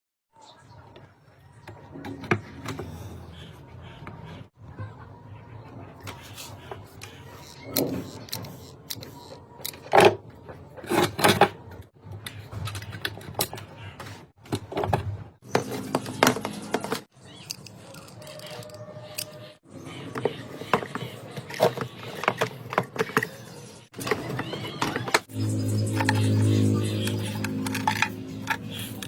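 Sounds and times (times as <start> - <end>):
small hard parts clattering: 20.2 - 25.3, 27.0 - 29.0.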